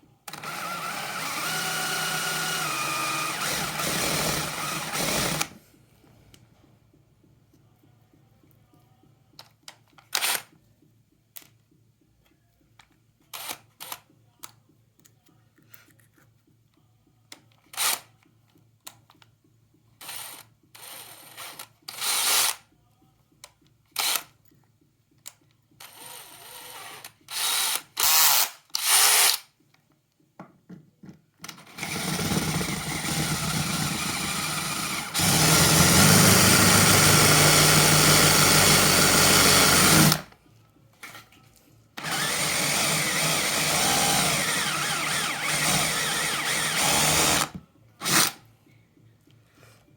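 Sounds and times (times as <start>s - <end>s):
cordless drill running: 0.3s - 5.6s, 26.4s - 29.4s, 31.7s - 40.3s, 42.0s - 48.4s.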